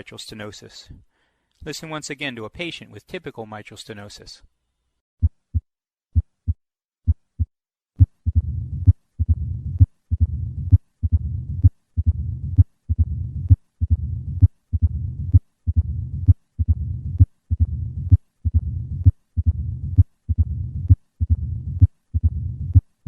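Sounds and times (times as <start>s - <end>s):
sharp heart sounds: 5.2s - 22.8s
low rumbling heart murmur: 8.2s - 22.8s.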